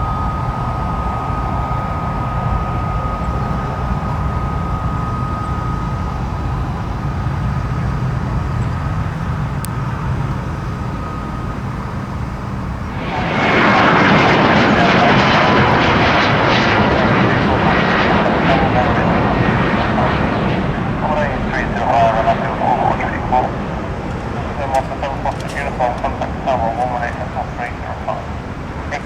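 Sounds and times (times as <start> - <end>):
jet engines rumbling and roaring: 0.0 - 29.0.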